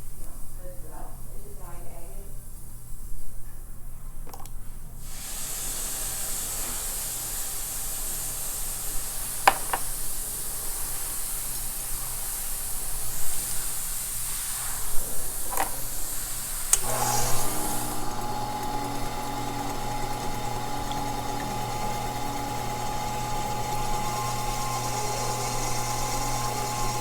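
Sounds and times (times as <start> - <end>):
gemstone hissing on polishing lap: 5.0 - 27.0
motor hum: 16.8 - 27.0.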